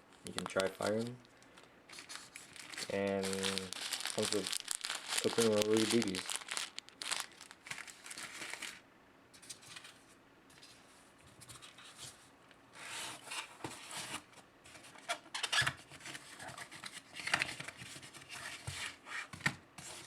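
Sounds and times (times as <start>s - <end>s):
packaging rustling and scraping: 0.0s - 8.8s.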